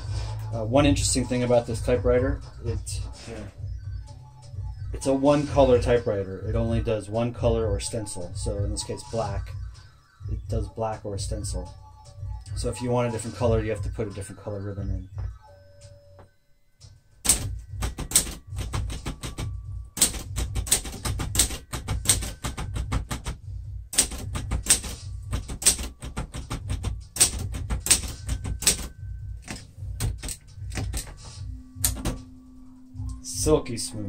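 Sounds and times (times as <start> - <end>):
typewriter typing: 17.2 - 31.2.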